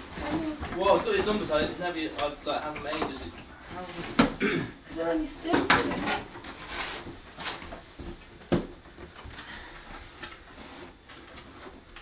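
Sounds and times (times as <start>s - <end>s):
cardboard scraping and rustling: 6.0s - 8.2s.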